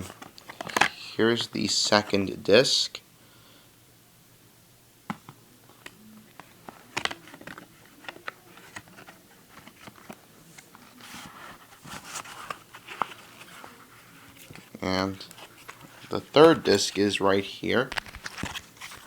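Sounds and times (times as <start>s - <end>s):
soft rustle: 6.3s - 17.1s.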